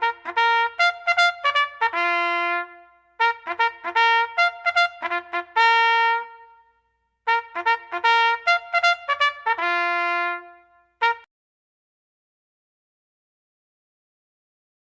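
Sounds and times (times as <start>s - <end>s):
solo trumpet melody: 0.0s - 11.3s.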